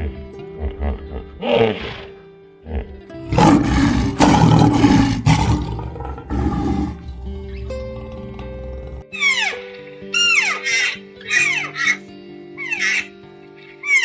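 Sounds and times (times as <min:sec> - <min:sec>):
background music: 0:00.0 - 0:14.0
big cat roaring: 0:02.7 - 0:09.2.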